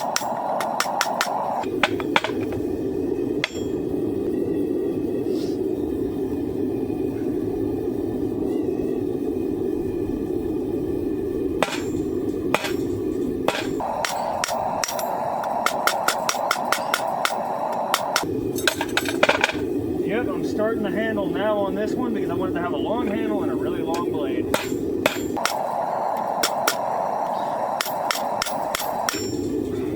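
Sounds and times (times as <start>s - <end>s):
hammer striking steel on anvil: 0.0s - 2.5s, 3.4s - 3.8s, 11.6s - 12.0s, 12.6s - 12.9s, 13.5s - 19.6s, 24.5s - 25.7s, 26.4s - 26.9s, 27.7s - 29.5s
steady rushing noise: 0.0s - 29.9s.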